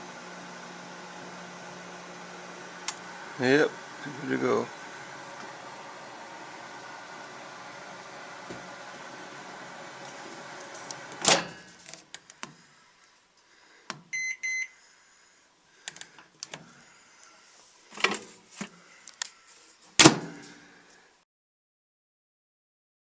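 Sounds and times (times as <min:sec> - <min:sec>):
microwave oven humming: 0:00.0 - 0:11.8, 0:13.5 - 0:17.5
short electronic beeps: 0:14.1 - 0:14.7
loud clunk: 0:20.0 - 0:20.5.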